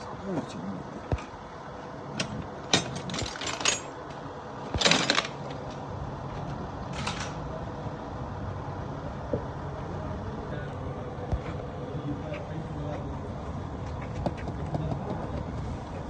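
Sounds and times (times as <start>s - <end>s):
low background hum: 0.0s - 16.0s
metal tools clinking: 2.2s - 5.8s, 6.9s - 7.4s.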